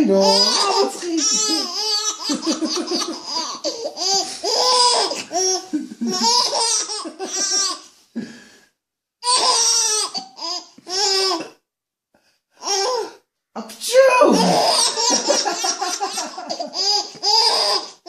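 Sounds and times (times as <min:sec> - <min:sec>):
baby laughing: 0:00.2 - 0:07.9, 0:09.2 - 0:11.5, 0:14.3 - 0:18.0.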